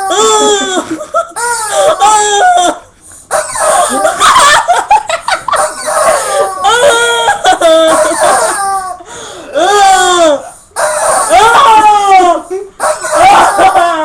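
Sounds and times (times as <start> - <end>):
rubber chicken toy wailing: 1.4 - 2.7, 3.3 - 4.5, 5.6 - 9.0, 10.8 - 14.0.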